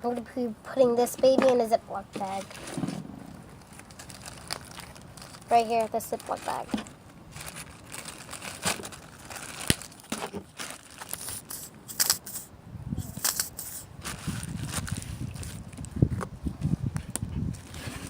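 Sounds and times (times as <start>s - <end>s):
plastic bag crinkling: 2.3s - 12.5s, 13.2s - 15.8s
slime being packed: 2.3s - 12.5s.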